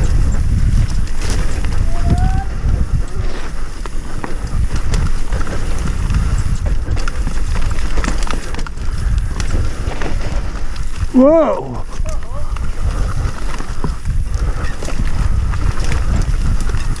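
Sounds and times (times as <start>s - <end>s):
bike knocks and rattles: 0.0s - 1.9s, 3.2s - 11.1s
mountain bike rumbling on trail: 0.0s - 17.0s.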